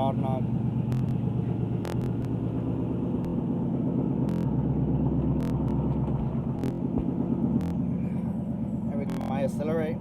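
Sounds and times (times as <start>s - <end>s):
car engine knocking: 0.0s - 10.0s
sharp clicks: 1.8s - 2.4s, 4.3s - 4.5s.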